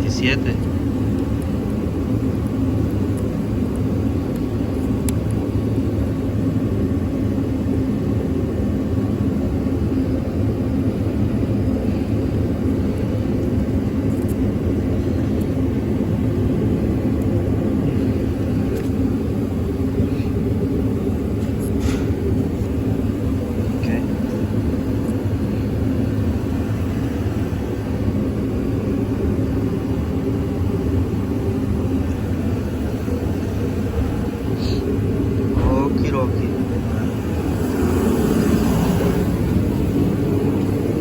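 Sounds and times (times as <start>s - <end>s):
truck engine idling: 15.0s - 41.0s.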